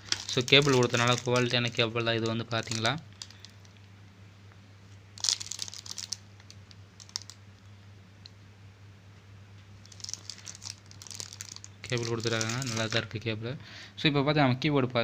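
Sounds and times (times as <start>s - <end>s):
packaging crinkling: 0.0s - 3.8s, 5.2s - 7.4s, 9.8s - 13.2s.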